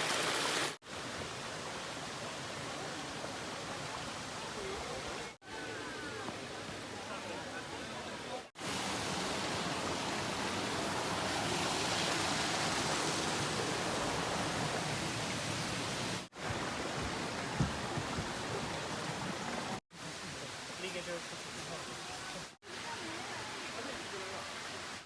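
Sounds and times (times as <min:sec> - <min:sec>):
waterfall pouring: 0:00.0 - 0:02.2, 0:08.5 - 0:25.0.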